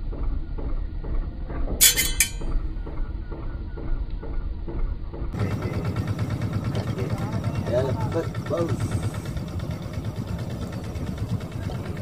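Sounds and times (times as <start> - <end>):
metallic jingle: 1.8 - 2.5.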